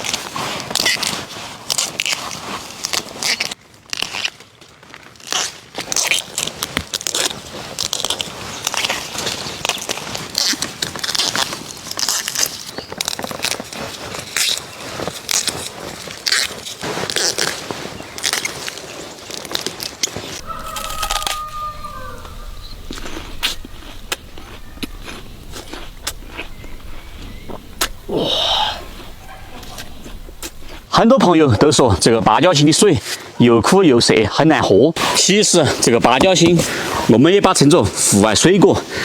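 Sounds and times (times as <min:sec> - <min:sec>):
plant stalks crackling and rustling: 0:00.0 - 0:33.0
rooster crowing: 0:20.4 - 0:30.9.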